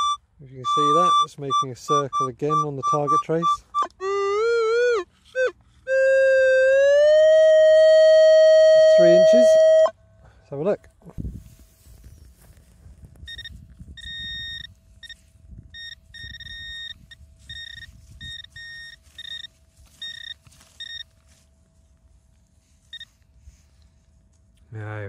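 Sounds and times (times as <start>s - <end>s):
metal detector beeping: 0.0s - 10.0s, 13.2s - 21.3s, 22.8s - 23.2s
digging and handling rustling: 17.4s - 24.5s.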